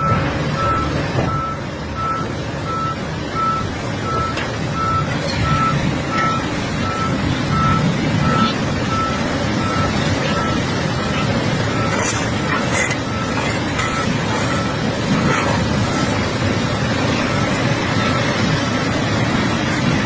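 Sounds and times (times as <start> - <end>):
back-up alarm beeping: 0.0 - 18.7
diesel engine running: 0.0 - 20.0.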